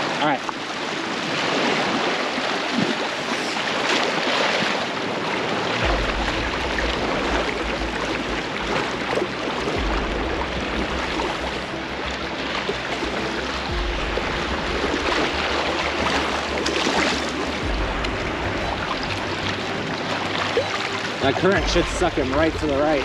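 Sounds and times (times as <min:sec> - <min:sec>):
surf washing onto beach: 0:00.0 - 0:23.0
low rumble: 0:05.8 - 0:20.5, 0:21.5 - 0:23.0.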